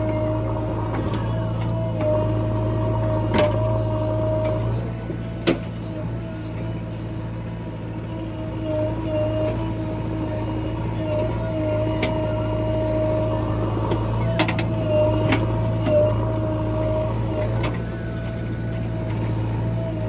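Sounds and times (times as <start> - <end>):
diesel engine running: 0.0 - 20.0
wavering whine: 8.0 - 20.0.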